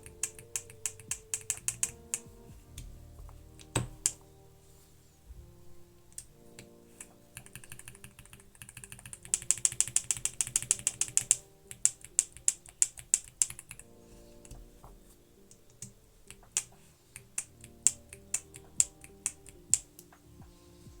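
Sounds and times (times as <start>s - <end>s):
mechanical keyboard typing: 0.0s - 2.3s, 7.0s - 13.8s.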